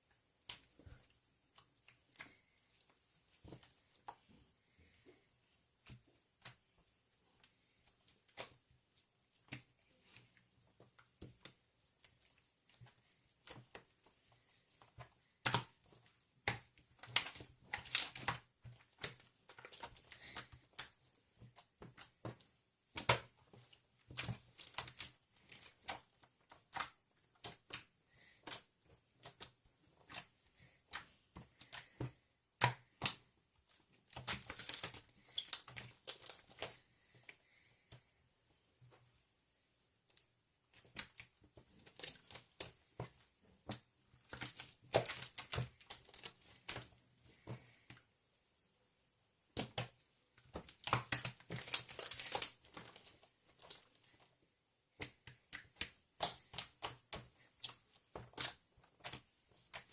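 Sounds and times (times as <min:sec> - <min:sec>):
irregular clicks and taps: 0:05.8 - 0:39.2, 0:54.9 - 0:59.9.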